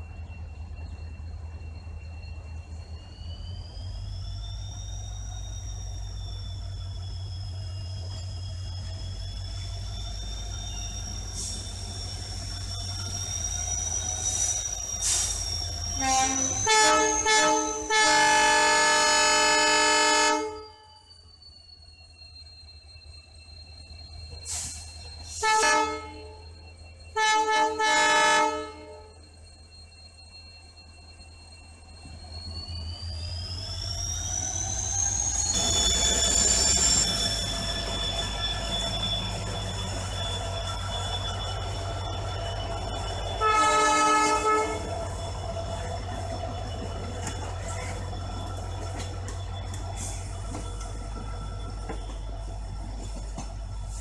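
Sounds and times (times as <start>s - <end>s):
high-pitched wheel squeal: 0.0s - 54.0s
train low rumble: 0.0s - 54.0s
locomotive air horn blasts: 16.0s - 20.8s, 25.4s - 26.4s, 27.2s - 29.1s, 43.4s - 44.8s
air horn blast: 43.4s - 44.8s.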